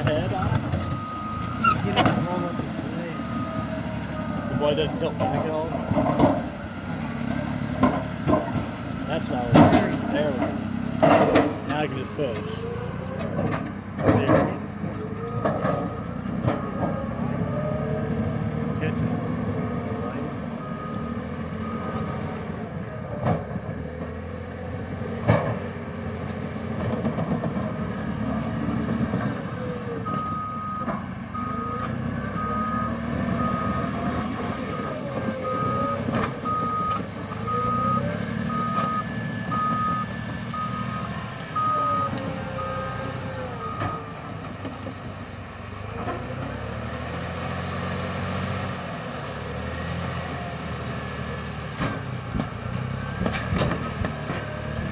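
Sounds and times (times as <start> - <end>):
bulldozer diesel engine working: 0.0 - 54.9
engine whine: 0.0 - 54.9
reverse alarm beeping: 30.1 - 43.0.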